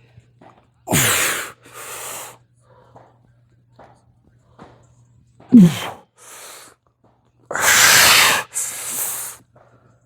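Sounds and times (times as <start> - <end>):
man breathing hard: 0.9 - 3.1, 5.5 - 6.8, 7.5 - 9.4
man grunting exhale: 5.6 - 6.0.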